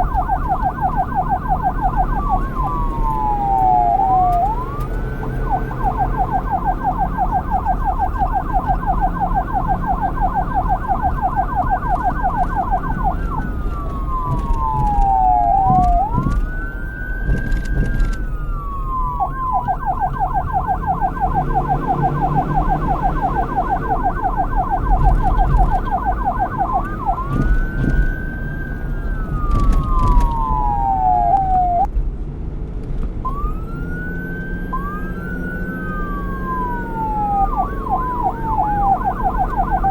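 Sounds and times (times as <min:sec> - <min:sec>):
police siren: 0:00.0 - 0:31.9, 0:33.2 - 0:39.9.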